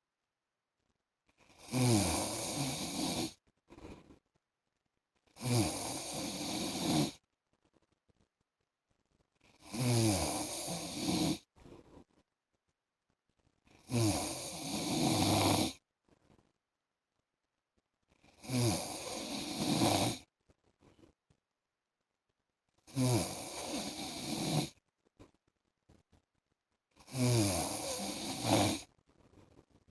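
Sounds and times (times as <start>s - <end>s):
man snoring: 1.6s - 3.4s, 5.4s - 7.2s, 9.6s - 11.4s, 13.8s - 15.8s, 18.4s - 20.2s, 22.9s - 24.8s, 27.0s - 28.9s.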